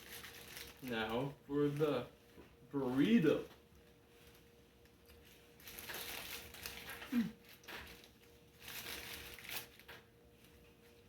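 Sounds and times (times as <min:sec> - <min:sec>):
food wrapper crinkling: 0:00.0 - 0:02.0, 0:03.8 - 0:10.0.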